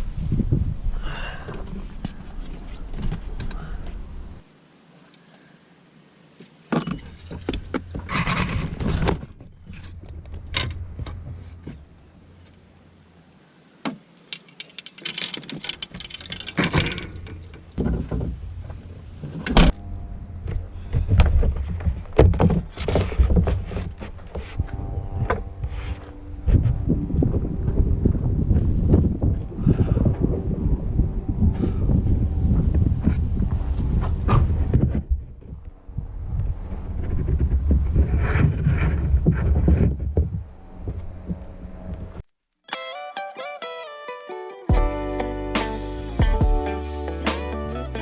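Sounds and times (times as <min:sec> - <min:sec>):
fishing gear clattering and rattling: 0:06.7 - 0:11.6, 0:14.1 - 0:19.7
rustling: 0:13.9 - 0:26.9.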